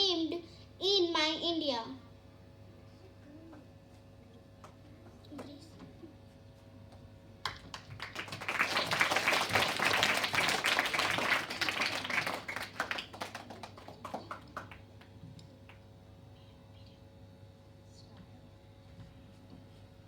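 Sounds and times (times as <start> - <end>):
audience applauding: 7.5 - 15.8.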